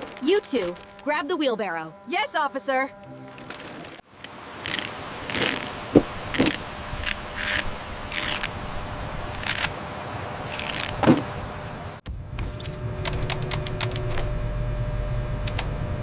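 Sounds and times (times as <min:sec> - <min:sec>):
bricks and rubble scraping: 0:03.3 - 0:08.5.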